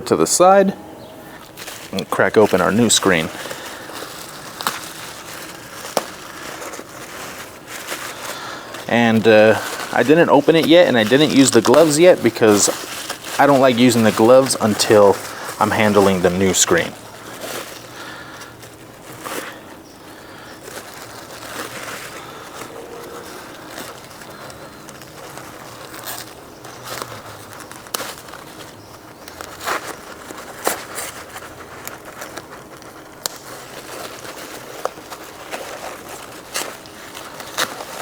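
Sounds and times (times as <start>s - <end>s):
plastic packaging crinkling: 1.3s - 38.0s.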